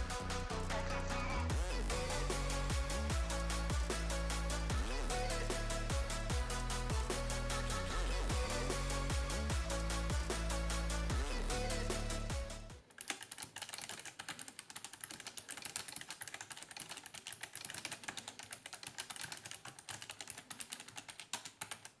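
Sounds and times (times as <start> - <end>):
electronic music: 0.0 - 12.8
fast keyboard typing: 13.0 - 22.0.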